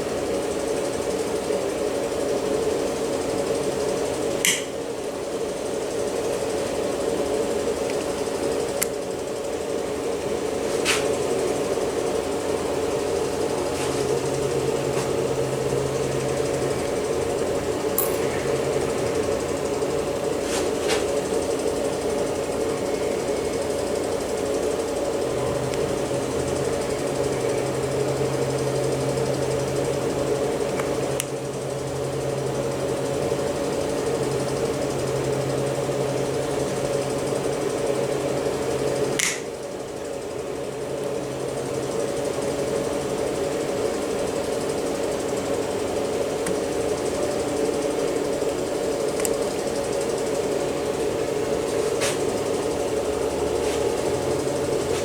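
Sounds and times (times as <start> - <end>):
sharp click: 4.4 - 4.7, 39.2 - 39.5
machine hum: 7.2 - 37.0, 37.6 - 55.0.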